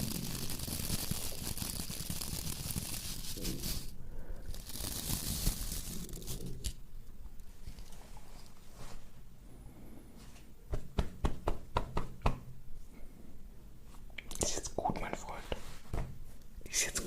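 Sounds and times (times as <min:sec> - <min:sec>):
crinkling and rustling: 0:00.0 - 0:09.2.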